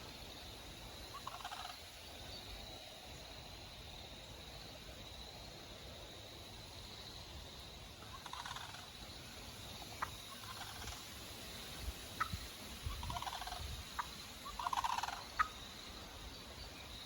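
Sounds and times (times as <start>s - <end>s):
distant turkeys gobbling: 1.1s - 1.8s, 8.0s - 9.0s, 9.9s - 11.0s, 12.2s - 15.6s.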